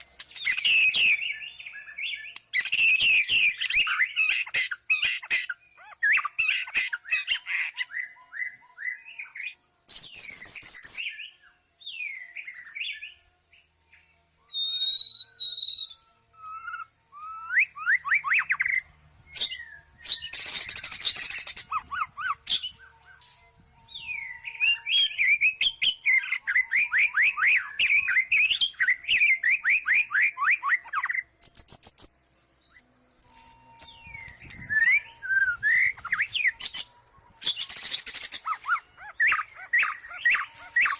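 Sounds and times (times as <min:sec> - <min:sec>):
rapid repeated bird notes: 0:00.0 - 0:08.2, 0:13.7 - 0:23.4, 0:24.2 - 0:40.9
bird singing whistled song: 0:00.0 - 0:40.9.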